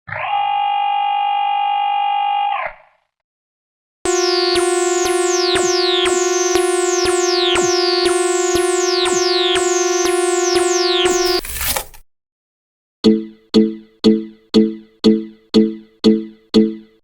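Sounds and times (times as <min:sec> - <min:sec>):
synthesizer tone with falling chirp: 0:04.1 - 0:11.4.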